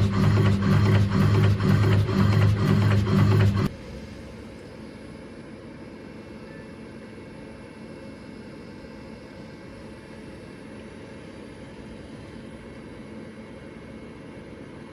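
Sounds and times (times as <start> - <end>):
steady low hum: 0.0 - 5.3.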